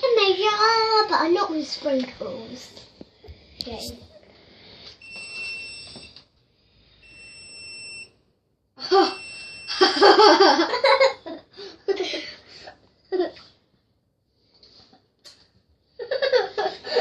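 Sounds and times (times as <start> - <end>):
electronic alarm beeping: 5.0 - 6.2, 7.0 - 8.2, 9.0 - 10.1.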